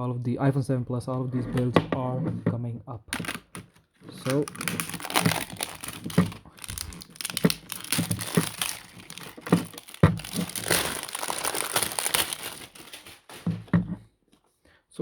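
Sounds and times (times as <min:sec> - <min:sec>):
packaging crinkling and rustling: 0:03.2 - 0:13.7.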